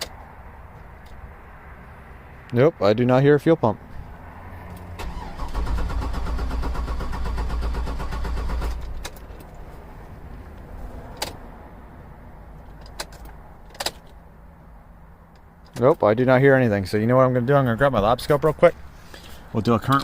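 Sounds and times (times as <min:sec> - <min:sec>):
car engine cranking: 0:04.7 - 0:09.6.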